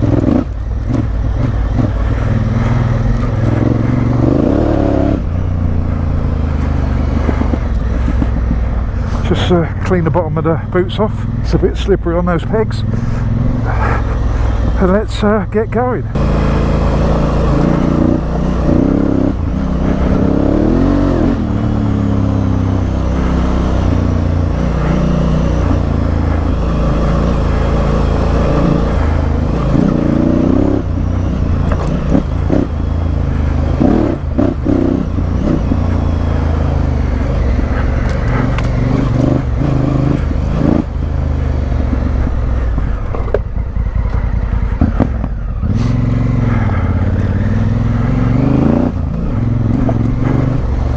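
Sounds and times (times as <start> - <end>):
motorcycle engine revving: 0.0 - 50.9
knocks and clatters: 6.6 - 8.9, 41.7 - 45.4.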